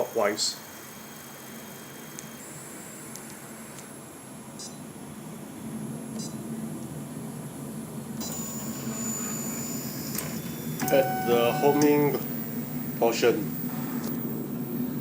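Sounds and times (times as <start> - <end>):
stepper motors high whine: 0.0 - 3.1, 8.2 - 15.0
short beep-like tones: 10.8 - 12.2.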